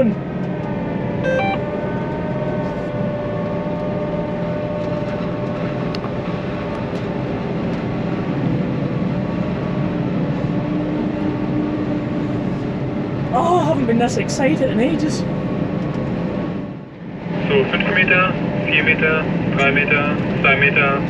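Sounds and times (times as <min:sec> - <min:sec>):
high whine: 0:01.0 - 0:07.7.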